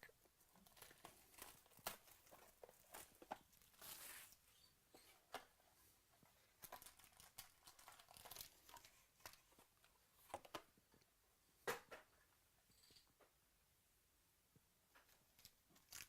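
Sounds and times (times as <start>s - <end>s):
wrappers crinkling and tearing: 0.6s - 4.4s, 6.6s - 9.5s, 15.4s - 16.0s
cards rustling: 6.6s - 10.7s.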